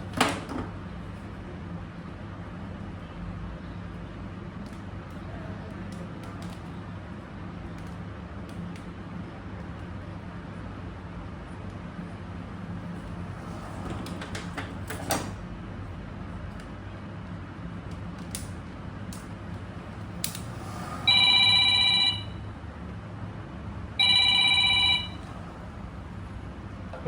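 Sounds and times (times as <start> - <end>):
steady low hum: 0.7 - 27.0
telephone ringing: 21.0 - 22.5, 24.0 - 25.6.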